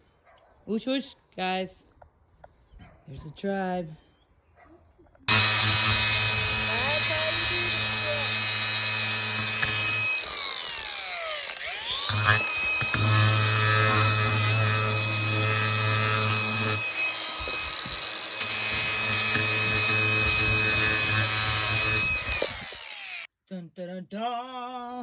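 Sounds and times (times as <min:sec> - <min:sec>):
electric power tool motor running: 0:05.3 - 0:23.3.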